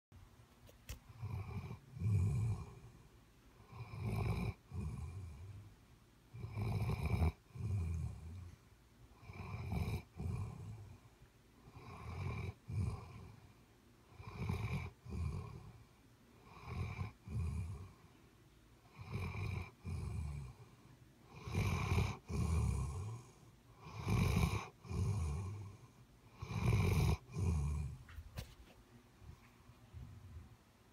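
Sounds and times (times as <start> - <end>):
heavy snoring: 1.1 - 3.0, 3.6 - 5.7, 6.3 - 8.6, 9.2 - 11.0, 11.6 - 13.4, 14.2 - 15.8, 16.4 - 18.0, 18.9 - 20.7, 21.3 - 28.0.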